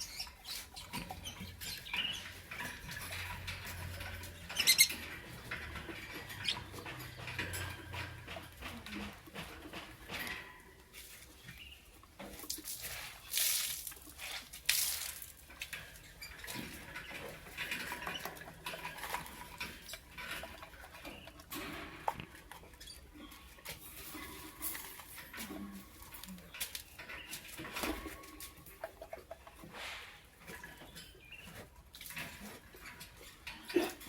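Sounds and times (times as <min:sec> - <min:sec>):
lovebirds chattering: 0:00.0 - 0:08.0
scratchy clicks and rustles: 0:00.0 - 0:34.0.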